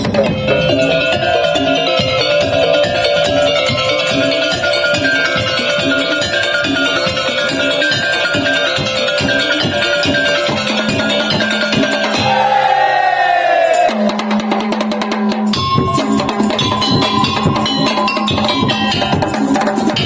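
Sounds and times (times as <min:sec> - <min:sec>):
repeating melodic notes: 0:00.0 - 0:12.4
drums beating steadily: 0:00.0 - 0:20.0
higher sliding melodic line: 0:00.2 - 0:12.9.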